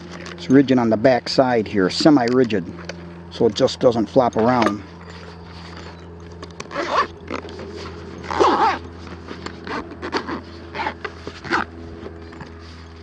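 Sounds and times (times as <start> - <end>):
zipper on case pulled: 5.2 - 13.0.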